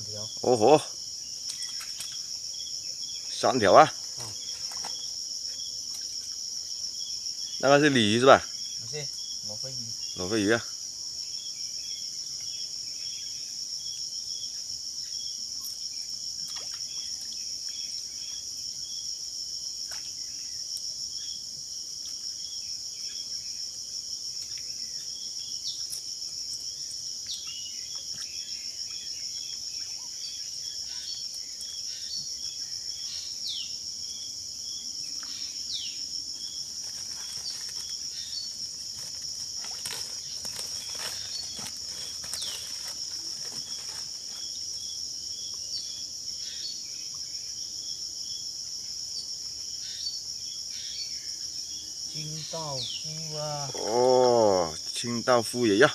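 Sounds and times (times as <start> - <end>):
regular insect chirps: 0.0 - 55.9
high-pitched insect buzz: 24.4 - 54.8.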